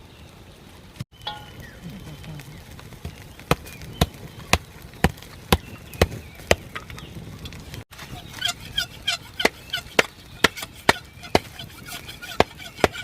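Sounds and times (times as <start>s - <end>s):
blade chopping: 7.9s - 13.0s.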